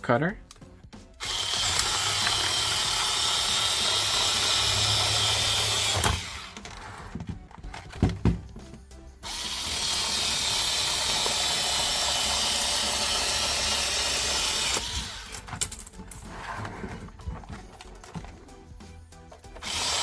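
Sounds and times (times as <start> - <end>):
power cutter cutting plastic: 1.2 - 7.0, 9.2 - 15.8, 19.5 - 20.0.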